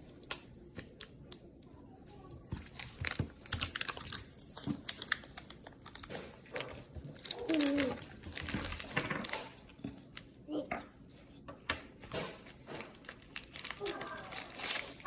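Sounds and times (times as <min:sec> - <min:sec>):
small objects clicking and rustling: 0:02.6 - 0:10.3, 0:12.1 - 0:15.0.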